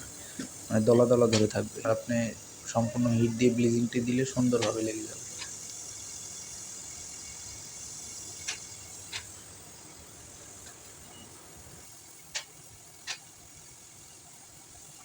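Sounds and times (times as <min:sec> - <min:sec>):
torch flame hissing: 0:00.0 - 0:15.0
sharp metallic clicks: 0:04.4 - 0:05.8, 0:12.3 - 0:13.3.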